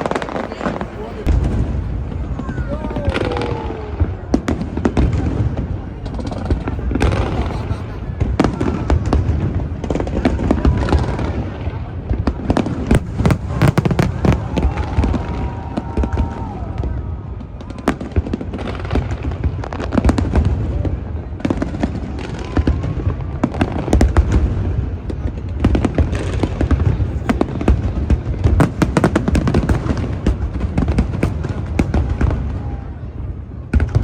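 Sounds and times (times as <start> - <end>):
fireworks bangs and crackles: 0.0 - 34.0
fireworks booming: 0.0 - 34.0.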